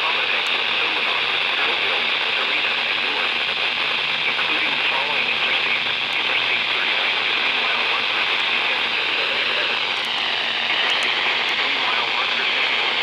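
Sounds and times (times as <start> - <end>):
radio static hiss: 0.0 - 13.0.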